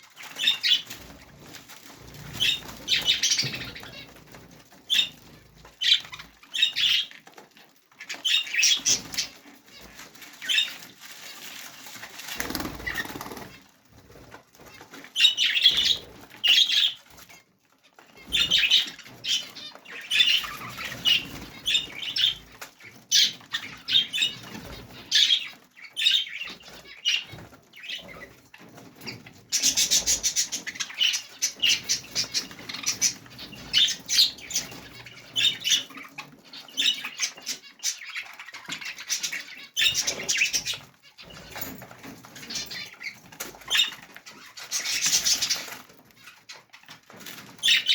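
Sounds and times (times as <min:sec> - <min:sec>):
budgerigars chirping: 0:00.2 - 0:01.1, 0:02.3 - 0:04.2, 0:04.9 - 0:05.2, 0:05.8 - 0:07.2, 0:08.0 - 0:09.4, 0:12.3 - 0:13.5, 0:15.2 - 0:17.0, 0:18.2 - 0:28.4, 0:29.0 - 0:41.6, 0:42.4 - 0:46.7, 0:47.6 - 0:47.9.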